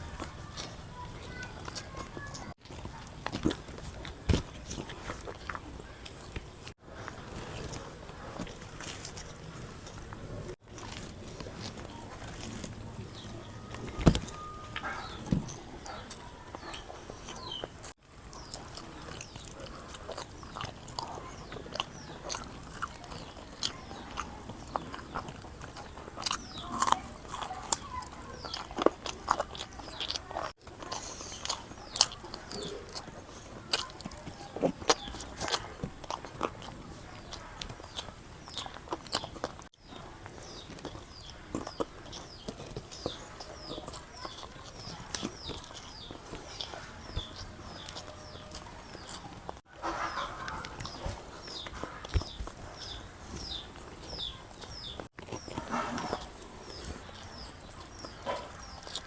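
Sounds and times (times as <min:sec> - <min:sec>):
person chewing and crunching: 0:00.0 - 0:59.0.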